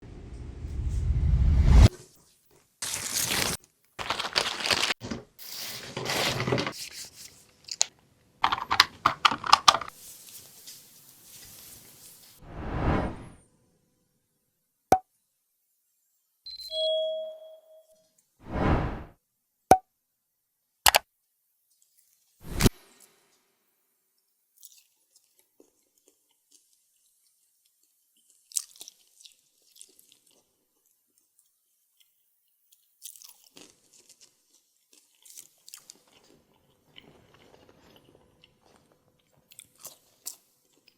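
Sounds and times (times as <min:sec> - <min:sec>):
paper food wrappers crinkling: 0:02.6 - 0:07.9
crisp clicks and crackles: 0:02.8 - 0:05.0
crunchy chewing of food: 0:24.5 - 0:40.9.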